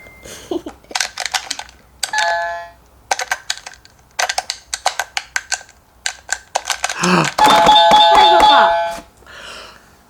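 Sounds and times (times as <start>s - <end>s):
game controller buttons clicking: 3.1s - 7.8s.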